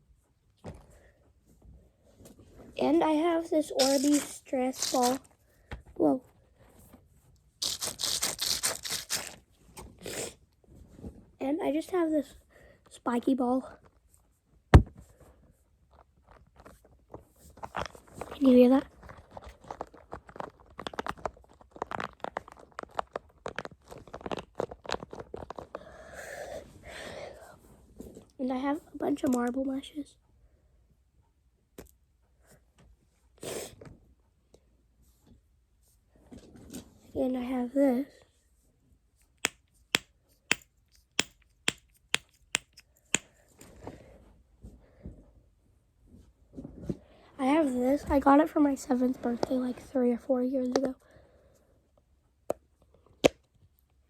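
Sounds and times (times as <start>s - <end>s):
fidget toy clicking and crunching: 3.8s - 5.2s, 7.6s - 9.4s, 39.4s - 43.3s
fidget toy clicking: 41.2s - 43.3s.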